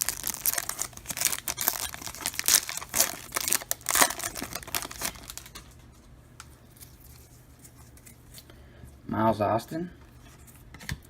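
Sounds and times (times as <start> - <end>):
foil card pack tearing: 0.0 - 5.8.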